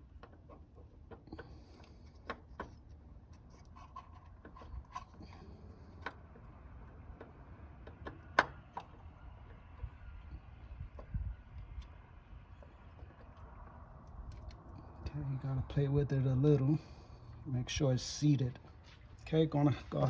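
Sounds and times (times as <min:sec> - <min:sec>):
light clicks and knocks of metal parts: 0:00.0 - 0:09.9, 0:10.7 - 0:15.2.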